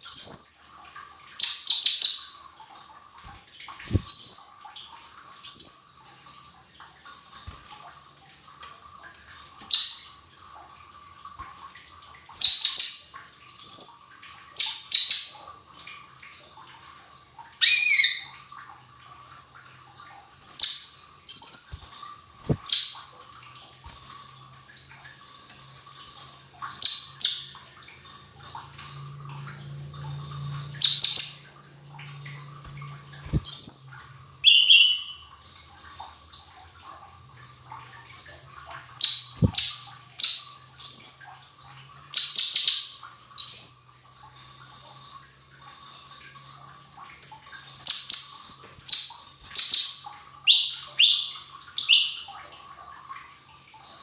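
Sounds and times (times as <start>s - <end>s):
bird chirping: 33.3s - 35.3s, 38.3s - 41.3s.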